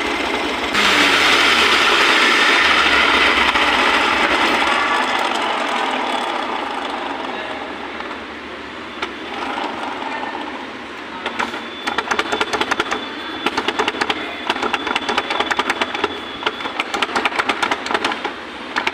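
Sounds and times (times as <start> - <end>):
scooter running hum: 0.0 - 7.9.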